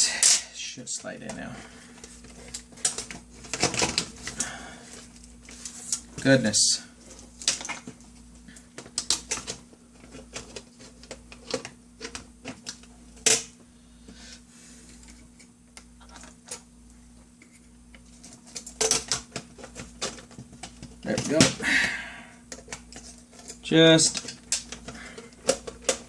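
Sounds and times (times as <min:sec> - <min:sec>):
plastic parts clicking and knocking: 0:02.2 - 0:04.4, 0:08.7 - 0:13.5, 0:17.9 - 0:21.6, 0:22.5 - 0:26.0.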